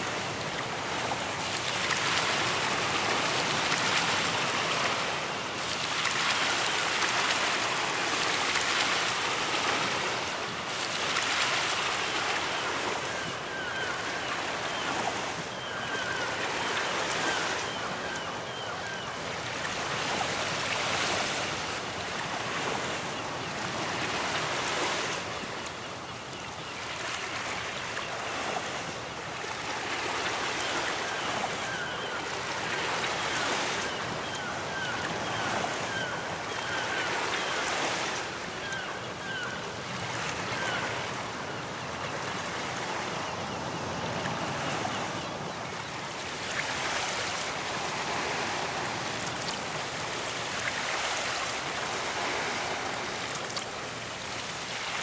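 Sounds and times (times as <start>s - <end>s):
ocean surf washing onto beach: 0.0s - 18.2s, 28.4s - 55.0s.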